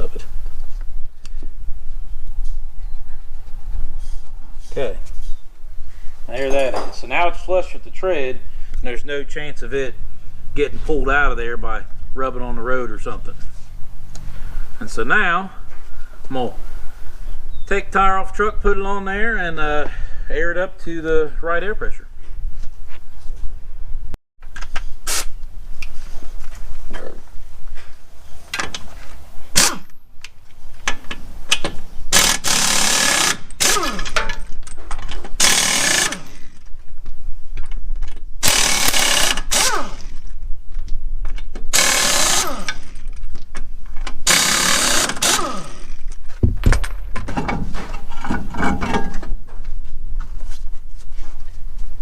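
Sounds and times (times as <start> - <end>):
impact wrench bursts: 29.5 - 30.0, 32.1 - 34.5, 35.4 - 36.6, 38.4 - 40.2, 41.7 - 43.1, 44.2 - 46.9
metal clanks and handling noise: 34.0 - 35.4, 46.2 - 49.8.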